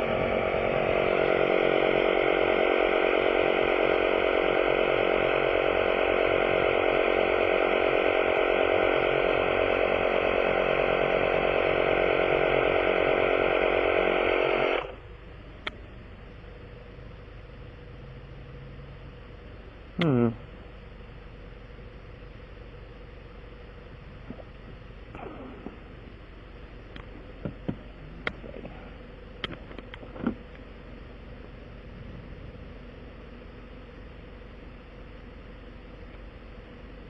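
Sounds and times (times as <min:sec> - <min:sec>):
electric motor tool humming: 0:00.0 - 0:15.0.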